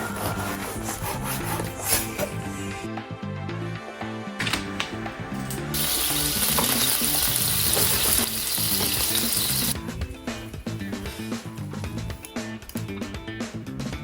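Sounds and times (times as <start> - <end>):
background music: 0.0 - 14.0
food sizzling in a hot pan: 5.7 - 9.8.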